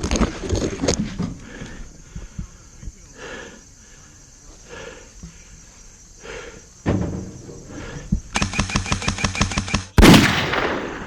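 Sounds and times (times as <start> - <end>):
heavy breathing: 1.0 - 6.8, 7.4 - 8.3
airsoft rifle full-auto burst: 8.4 - 10.7.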